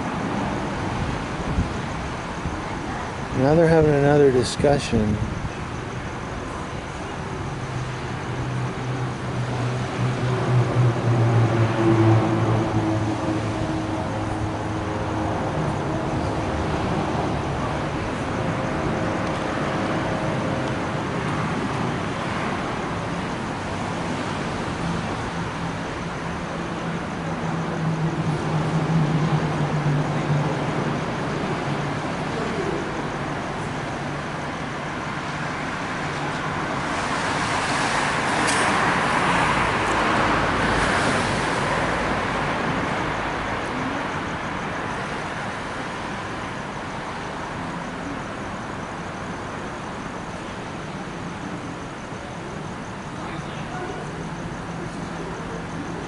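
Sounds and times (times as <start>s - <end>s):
engine hum: 0.0s - 56.0s
traffic hiss on wet road: 0.0s - 56.0s
loud vehicle passing: 7.7s - 26.3s, 35.1s - 46.1s.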